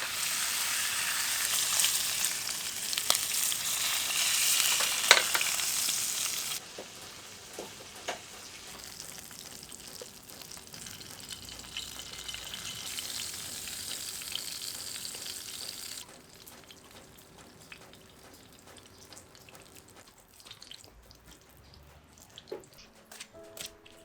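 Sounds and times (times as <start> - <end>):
food sizzling in a hot pan: 0.0 - 16.0
scattered crackles and ticks: 1.4 - 24.0.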